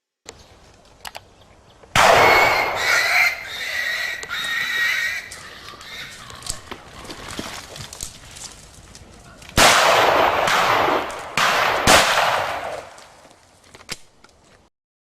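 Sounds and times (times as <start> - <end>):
shotgun shot: 2.0 - 2.9, 9.6 - 13.2
high wavering cry: 2.2 - 6.2.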